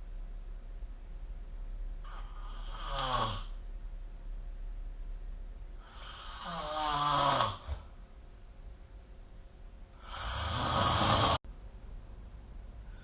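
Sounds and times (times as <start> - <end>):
person snoring: 2.0 - 3.6, 5.8 - 7.9, 10.0 - 11.4.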